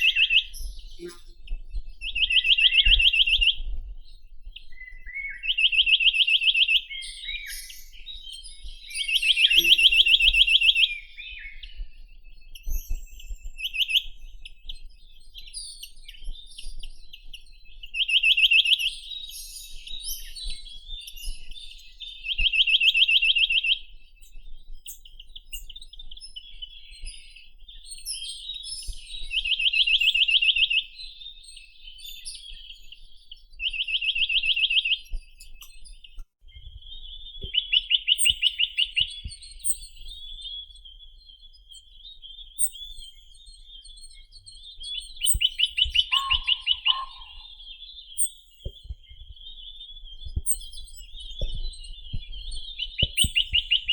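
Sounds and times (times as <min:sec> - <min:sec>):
high bird calls: 0:09.0 - 0:11.8, 0:45.0 - 0:49.2
bird dry trill: 0:45.4 - 0:47.6.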